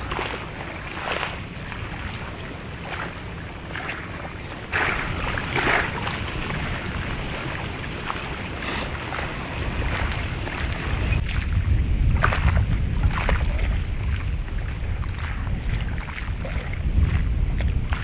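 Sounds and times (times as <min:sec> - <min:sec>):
water splashing: 0:00.0 - 0:18.0
wind rumbling on microphone: 0:00.0 - 0:18.0.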